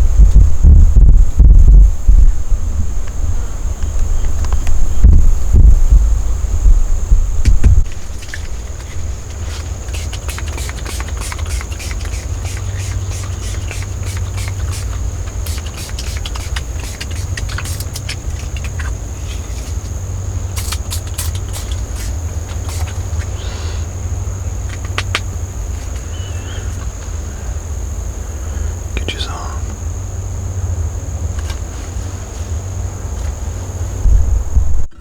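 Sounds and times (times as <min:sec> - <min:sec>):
high insect drone: 0:00.0 - 0:35.0
wind rumble on microphone: 0:00.0 - 0:35.0.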